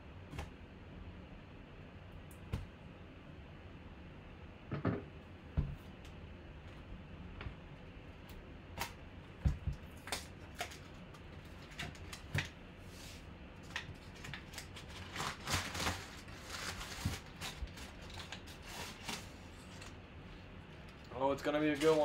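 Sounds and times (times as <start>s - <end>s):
packaging clicks and rustles: 13.6s - 20.0s.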